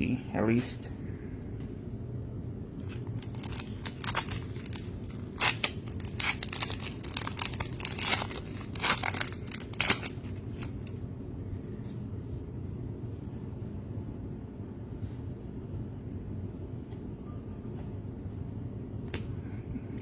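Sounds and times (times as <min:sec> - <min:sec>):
trading cards scraping and rustling: 0:02.8 - 0:10.9.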